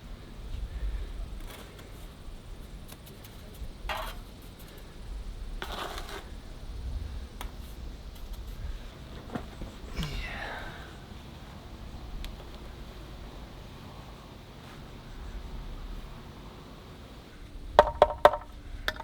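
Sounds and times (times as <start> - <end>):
trowel scraping mortar: 5.6 - 6.3
trowel clinking on brick: 17.8 - 19.0.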